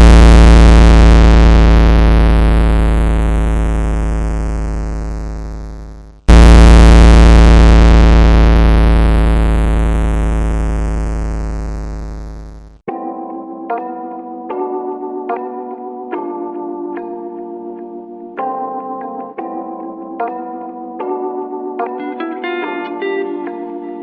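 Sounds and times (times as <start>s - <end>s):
synthesizer chord hit with deep bass: 0.0s - 5.3s, 6.3s - 11.8s.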